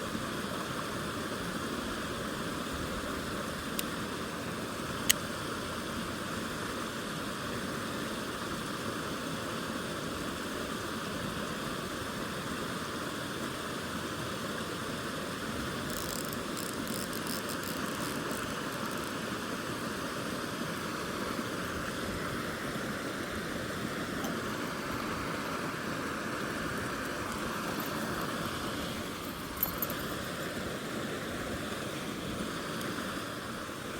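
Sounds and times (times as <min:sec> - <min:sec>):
stream water rushing: 0:00.0 - 0:33.9
faint high ticking: 0:15.8 - 0:19.2.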